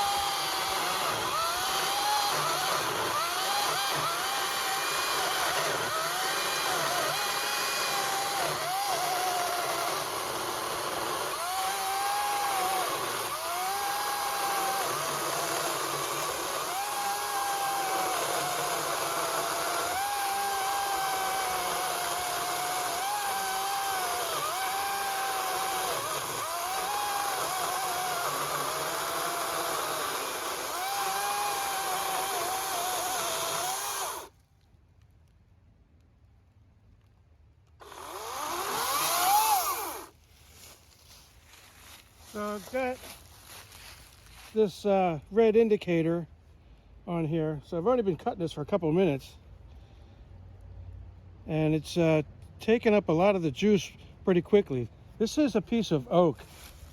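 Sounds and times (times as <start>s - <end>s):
electric chainsaw cutting log: 0.0s - 34.4s, 37.8s - 40.8s, 41.6s - 44.5s.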